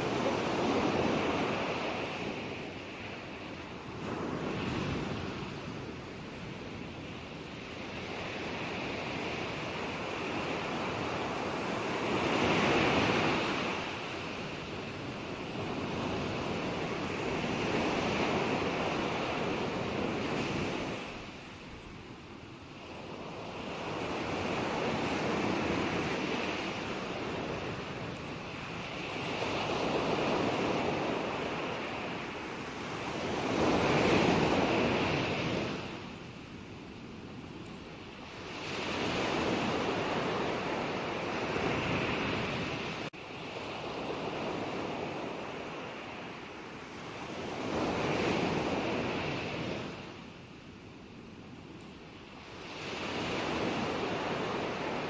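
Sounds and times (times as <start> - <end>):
ocean waves breaking on shore: 0.0 - 55.0.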